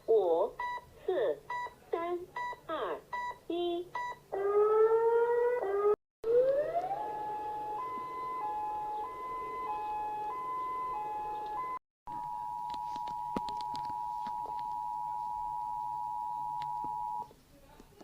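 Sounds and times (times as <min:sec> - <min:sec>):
rising siren wail: 0:04.3 - 0:11.8
hi-lo two-tone siren: 0:04.4 - 0:17.2.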